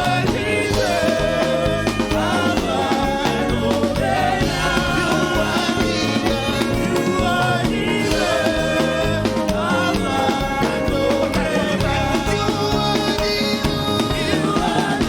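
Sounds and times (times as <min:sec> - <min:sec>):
gospel worship music with singing: 0:00.0 - 0:15.0.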